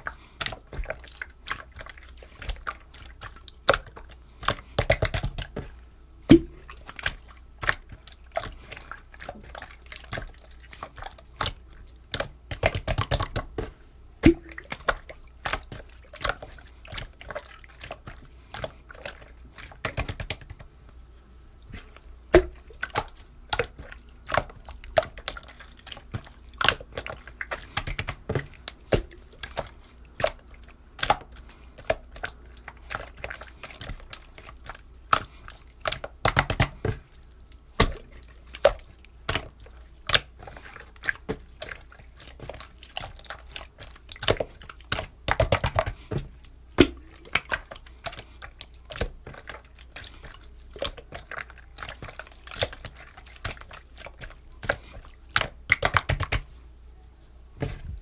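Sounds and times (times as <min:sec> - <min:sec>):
liquid pouring and splashing: 0:00.0 - 0:56.6
liquid dripping and trickling: 0:21.6 - 0:56.5.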